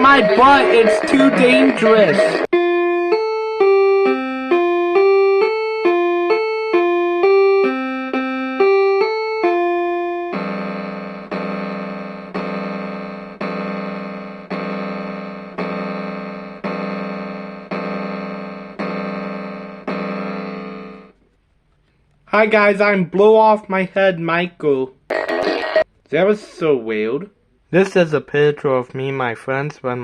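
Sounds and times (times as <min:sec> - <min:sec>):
piano chords struck: 0:00.0 - 0:21.2.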